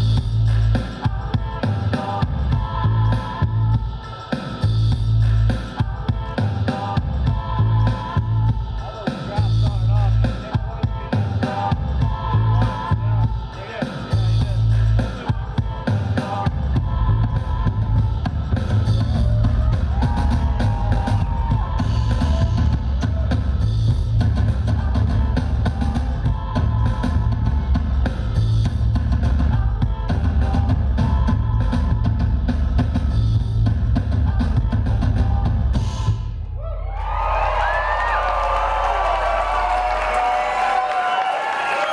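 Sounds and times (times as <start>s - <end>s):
heavy bass drum: 0.0s - 37.5s
audience cheering and whistling: 19.2s - 22.8s, 36.5s - 41.9s.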